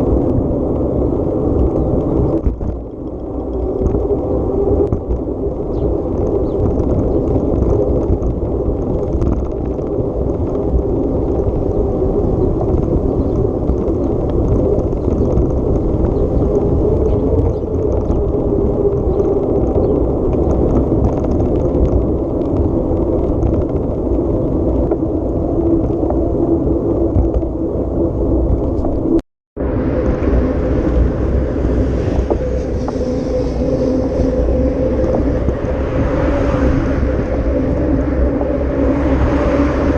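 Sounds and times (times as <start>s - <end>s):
wind or tyre hiss: 29.8s - 34.8s.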